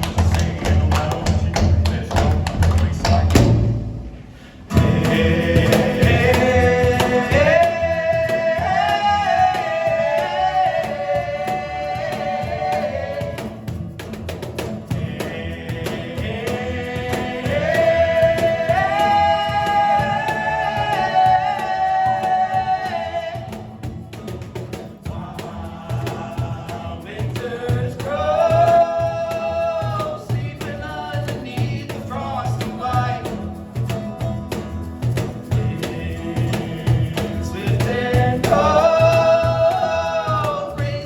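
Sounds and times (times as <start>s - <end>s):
folk band music: 0.0s - 31.1s, 32.0s - 41.0s.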